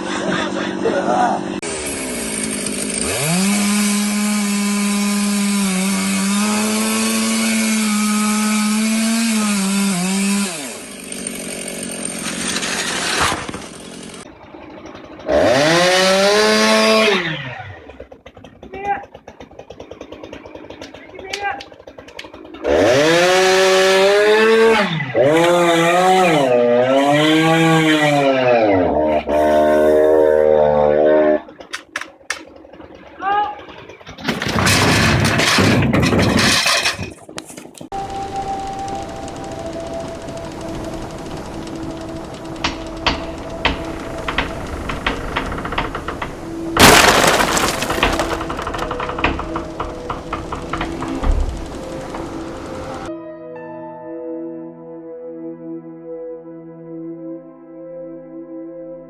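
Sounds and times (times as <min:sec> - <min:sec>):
chainsaw running at high revs: 0:00.4 - 0:35.5, 0:37.6 - 0:53.1
loud crash with breaking: 0:34.1 - 0:37.2, 0:46.8 - 0:52.4
knocks and clicks: 0:34.2 - 0:53.1.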